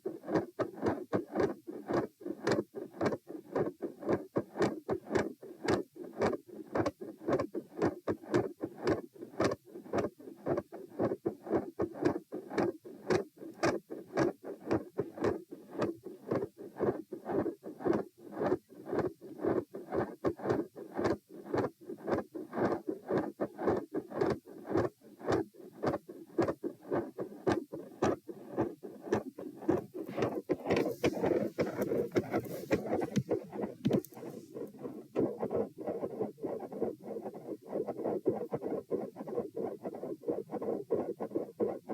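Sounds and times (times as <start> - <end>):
heartbeat through stethoscope: 0.0 - 39.7
stethoscope scraping rustle: 28.0 - 35.2.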